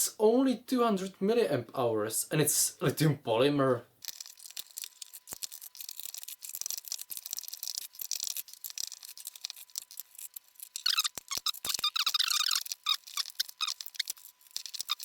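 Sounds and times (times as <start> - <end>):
plastic creaking squeakily: 4.0 - 15.0
plastic parts clicking and rubbing: 4.0 - 15.0.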